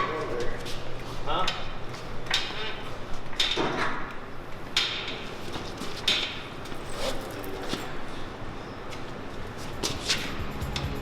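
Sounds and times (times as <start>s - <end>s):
knocks and clanks on metal: 3.4s - 4.0s.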